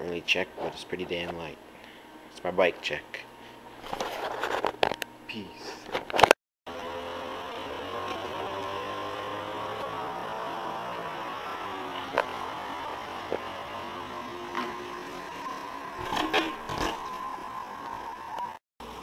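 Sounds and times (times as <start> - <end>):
electrical hum with hiss: 0.0 - 4.0.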